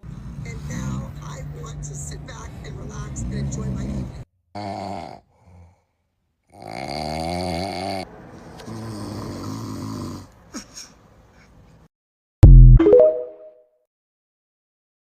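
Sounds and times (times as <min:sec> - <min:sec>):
person snoring: 0:04.6 - 0:05.9, 0:06.5 - 0:08.0, 0:08.7 - 0:10.3.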